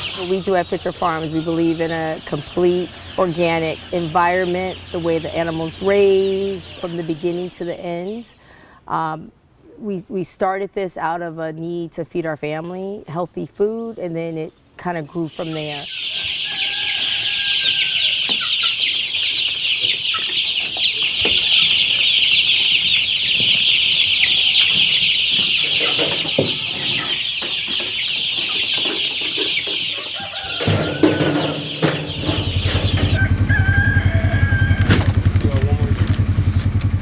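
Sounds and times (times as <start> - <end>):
low engine running: 0.0 - 7.5, 30.6 - 37.0
chickens calling: 0.0 - 8.6, 14.9 - 37.0.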